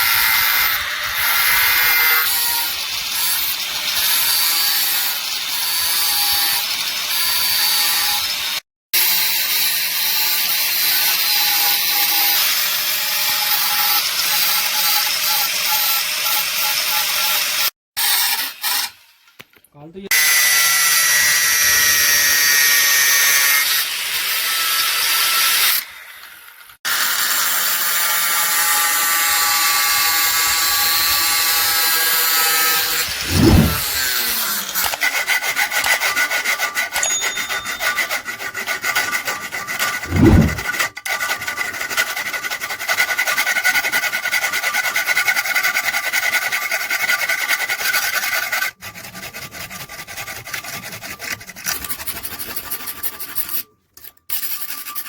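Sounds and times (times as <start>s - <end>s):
hand filing metal rasping: 32.3s - 55.0s
low thumps: 33.0s - 34.0s, 40.0s - 40.6s.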